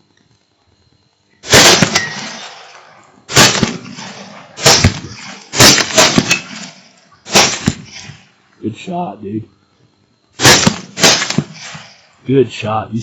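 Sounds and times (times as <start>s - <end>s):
rifle shots echoing: 1.4s - 8.2s, 10.4s - 12.1s.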